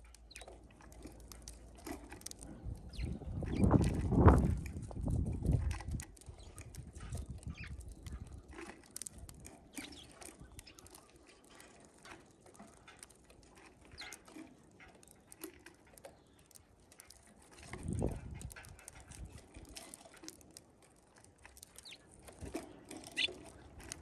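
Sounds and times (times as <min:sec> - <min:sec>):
small birds chirping: 0:00.0 - 0:04.6, 0:06.1 - 0:11.6, 0:13.8 - 0:17.2, 0:21.6 - 0:24.0.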